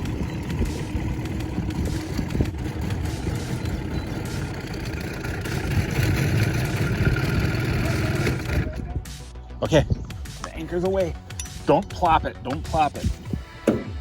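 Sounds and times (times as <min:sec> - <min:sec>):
small boat motor rumbling: 0:00.0 - 0:09.2.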